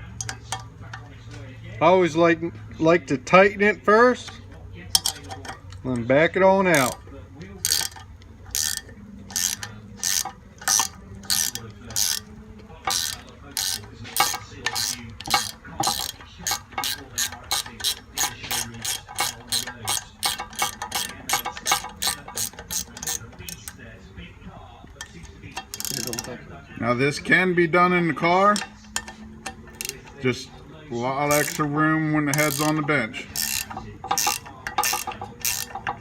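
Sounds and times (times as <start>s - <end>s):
ratchet wrench clicking: 0.0s - 1.1s, 4.2s - 6.0s, 6.6s - 23.8s, 24.9s - 26.4s, 28.4s - 36.0s.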